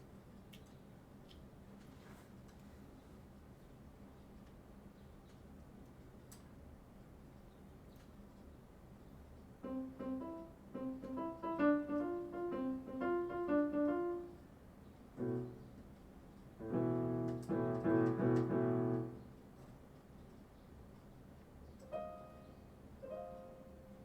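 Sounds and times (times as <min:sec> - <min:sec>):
keyboard piano notes and chords: 0:09.6 - 0:16.0, 0:16.6 - 0:19.6, 0:21.8 - 0:24.0.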